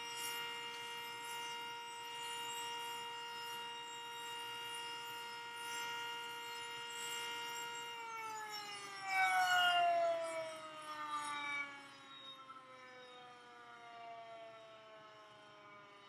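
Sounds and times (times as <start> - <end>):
warning siren winding down: 7.9 - 15.6.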